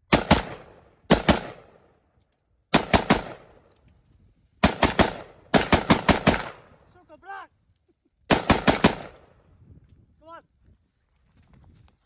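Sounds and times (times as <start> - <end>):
rifle gunfire: 0.1 - 1.8, 2.7 - 3.6, 4.6 - 6.8, 8.3 - 9.4.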